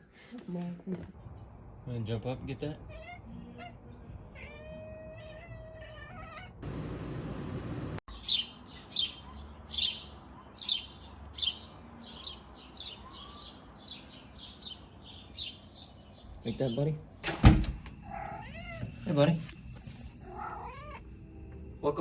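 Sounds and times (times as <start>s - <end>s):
cat meowing: 2.8s - 6.6s, 18.0s - 19.1s, 20.1s - 21.0s.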